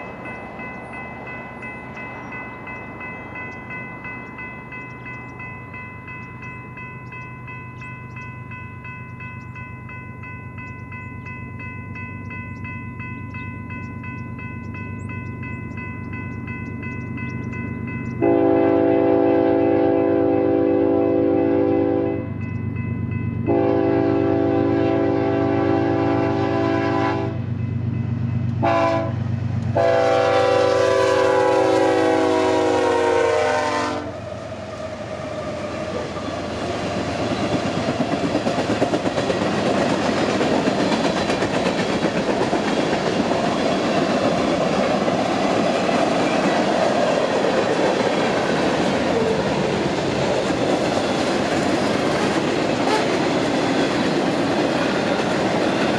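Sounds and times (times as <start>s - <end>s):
locomotive air horn blasts: 18.2s - 22.3s, 23.4s - 27.4s, 28.6s - 29.2s, 29.8s - 34.3s, 52.8s - 53.2s
train wheels clattering on rails: 35.6s - 55.9s.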